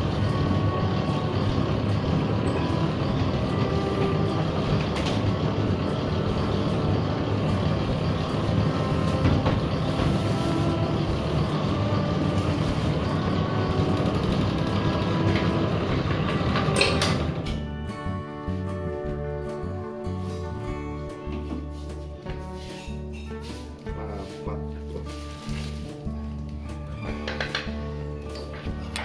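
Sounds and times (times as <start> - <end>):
motor droning steadily: 0.0 - 17.6.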